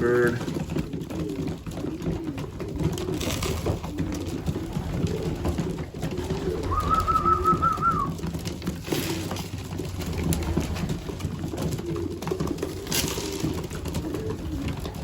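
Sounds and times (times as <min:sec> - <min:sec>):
pigeons cooing: 0:00.0 - 0:15.0
warbling high-pitched call: 0:06.6 - 0:08.1.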